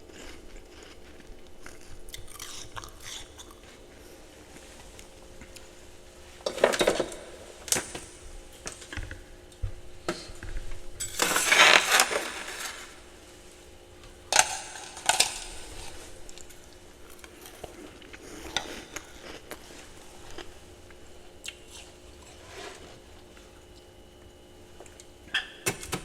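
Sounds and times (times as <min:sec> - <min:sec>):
ice being chewed crunching: 0:00.0 - 0:05.7, 0:14.3 - 0:23.9.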